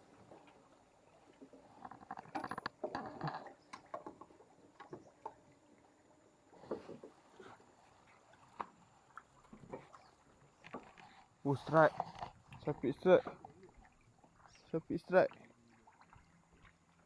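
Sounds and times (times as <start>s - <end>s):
light water sounds: 0.0s - 17.0s
knocks and rattles on boat: 1.6s - 5.4s.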